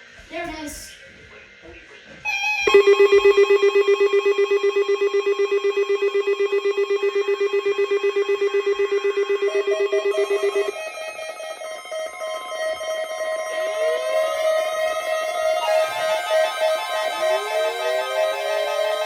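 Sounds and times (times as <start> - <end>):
weather radio alert alarm warbling: 2.3 - 11.0, 13.6 - 19.0
guitar music: 10.1 - 19.0.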